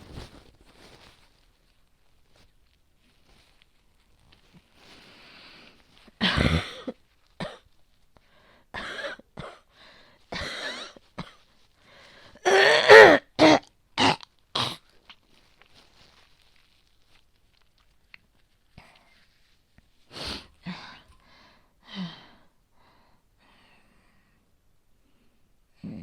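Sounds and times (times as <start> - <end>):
woman clearing throat: 6.2 - 7.6, 12.4 - 14.8
woman coughing: 6.2 - 7.6, 8.8 - 9.7, 10.4 - 11.4, 12.4 - 14.8.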